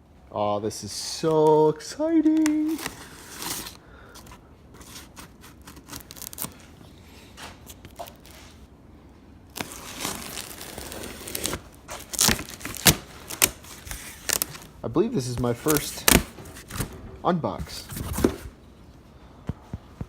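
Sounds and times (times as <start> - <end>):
packaging tearing and crinkling: 2.3 - 3.8, 4.8 - 6.6, 9.5 - 14.8, 15.4 - 16.9.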